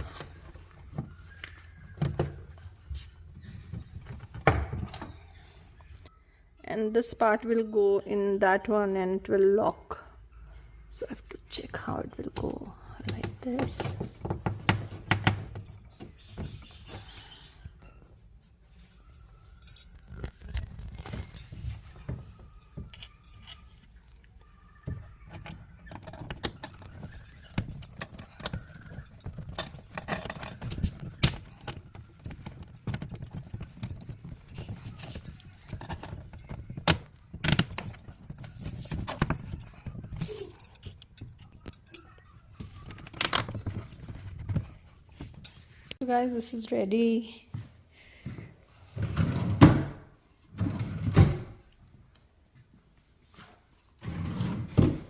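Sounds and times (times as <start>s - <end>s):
furniture parts clicking and knocking: 0.0s - 5.4s, 12.4s - 17.8s, 19.5s - 45.7s.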